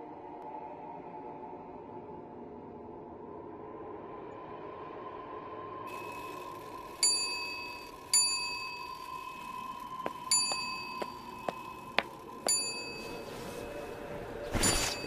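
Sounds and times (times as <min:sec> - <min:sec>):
small bell-like ding: 0:10.3 - 0:11.8, 0:12.5 - 0:13.4.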